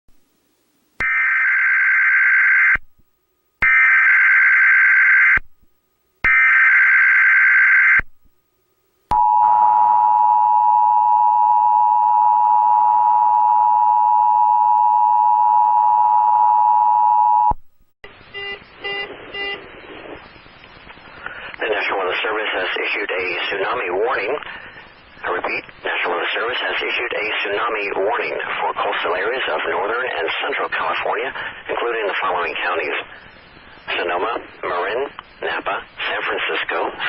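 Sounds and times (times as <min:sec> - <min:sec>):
steady two-tone attention signal: 0:09.1 - 0:17.6, 0:18.3 - 0:19.6.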